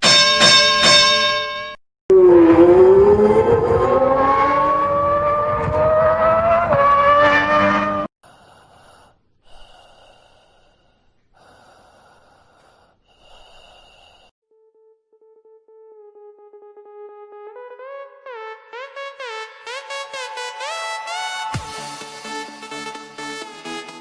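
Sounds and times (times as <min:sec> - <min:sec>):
car engine accelerating: 0:02.1 - 0:08.1.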